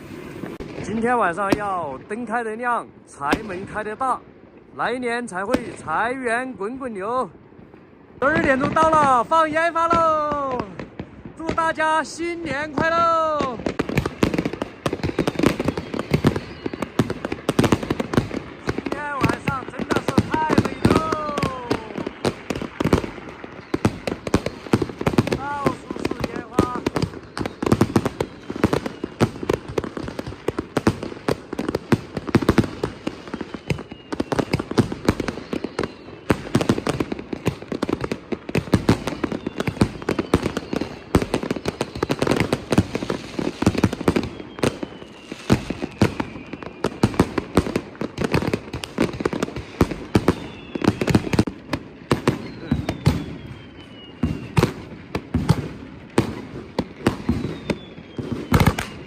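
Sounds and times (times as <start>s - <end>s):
firework and firecracker explosions: 0.0s - 59.0s
firework whistle falling in pitch: 52.2s - 54.6s, 57.2s - 59.0s.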